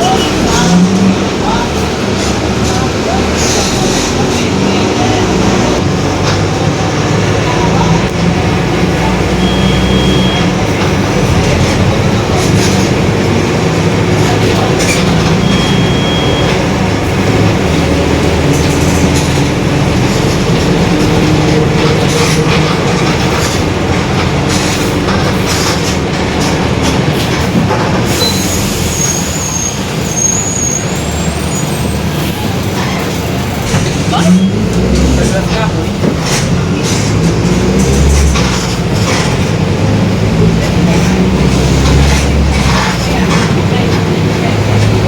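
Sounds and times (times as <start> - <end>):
bus diesel engine running: 0.0 - 45.0
short high beeps: 9.4 - 10.5, 15.4 - 16.5.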